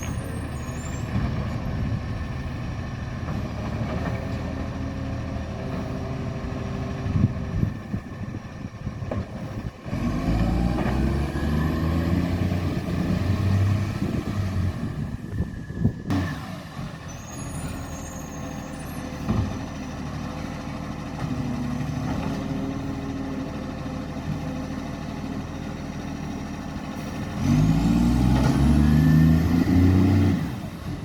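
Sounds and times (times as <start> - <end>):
truck diesel engine with exhaust leak: 0.0 - 31.0.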